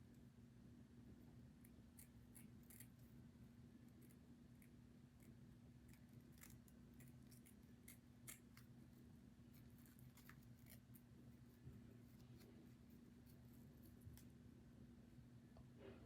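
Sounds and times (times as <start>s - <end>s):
scissors snipping: 1.6s - 3.0s, 4.0s - 8.7s, 9.8s - 11.0s.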